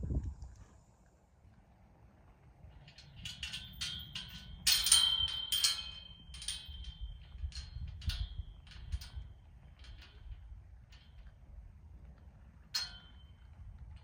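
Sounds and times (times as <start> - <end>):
low rumble: 0.0 - 0.9
metal clinking and jingling: 2.8 - 11.4.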